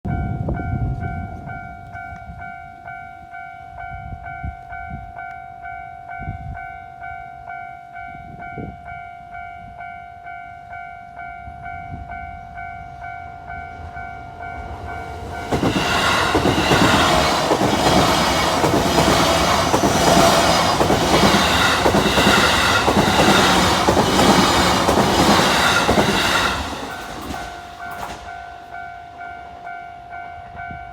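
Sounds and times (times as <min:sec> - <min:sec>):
level crossing warning bell: 0:00.1 - 0:30.9
train wheel and rail noise: 0:00.1 - 0:30.9.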